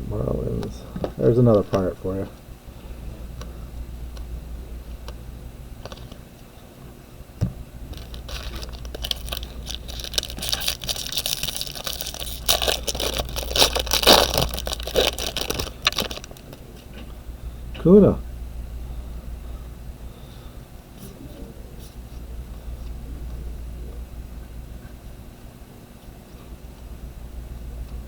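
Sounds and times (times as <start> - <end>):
steady low hum: 0.0 - 28.0
foil wrapper crinkling and tearing: 7.9 - 16.6
cards being handled: 8.0 - 16.6.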